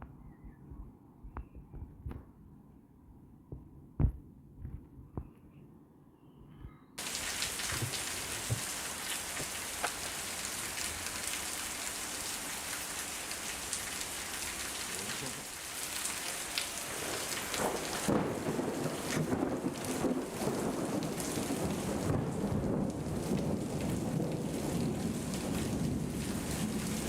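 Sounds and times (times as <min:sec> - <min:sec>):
heavy rain: 0:07.0 - 0:27.0.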